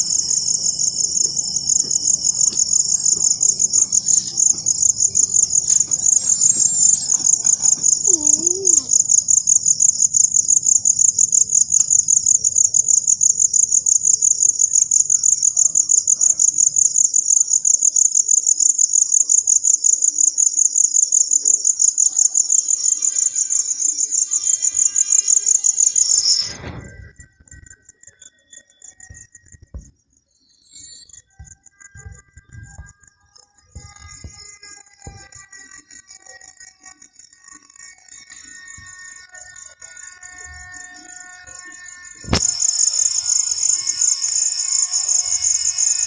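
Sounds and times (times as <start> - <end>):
faint tones: 0.0 - 12.8, 41.4 - 46.0
cricket chirping trill: 0.0 - 46.0.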